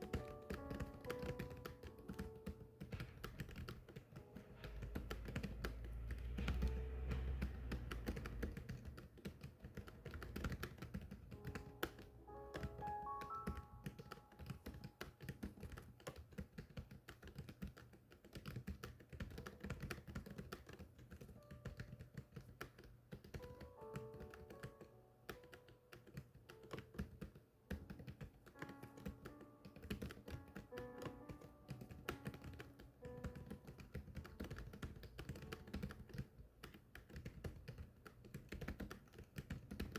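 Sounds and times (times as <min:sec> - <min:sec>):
keyboard typing: 0:00.0 - 0:39.9
soft background music: 0:00.0 - 0:39.9.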